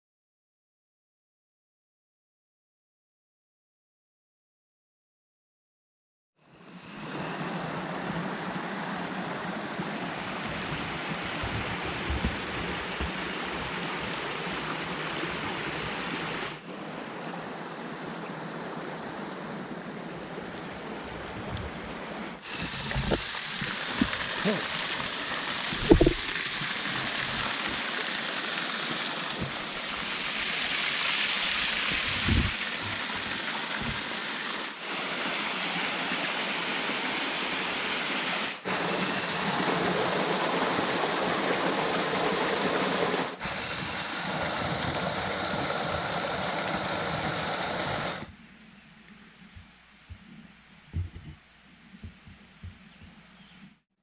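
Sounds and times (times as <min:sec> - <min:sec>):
waterfall rushing: 0:09.8 - 0:16.6, 0:19.2 - 0:48.3.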